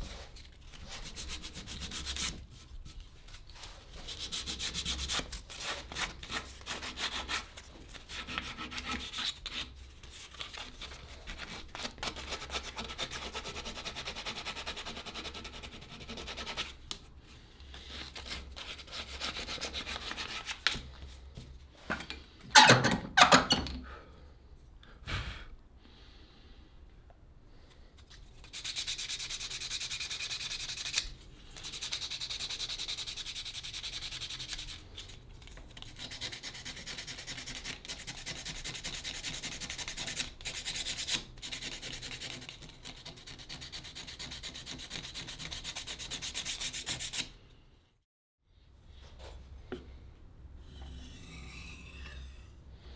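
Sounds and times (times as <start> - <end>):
sanding a wooden handle: 11.4 - 16.8, 18.3 - 20.4, 28.4 - 34.8, 36.0 - 47.3.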